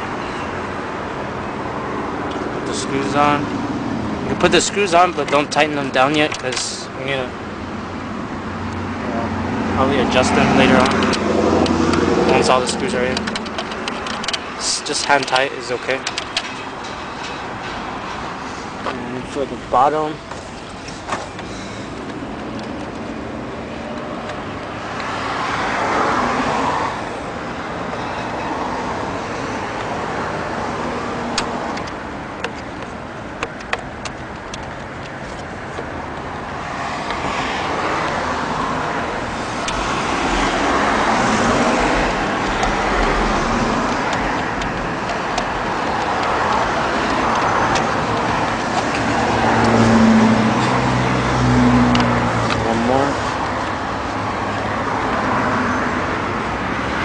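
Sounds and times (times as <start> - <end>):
road traffic passing: 0.0 - 57.0
sharp clicks: 10.8 - 17.0, 39.5 - 49.9.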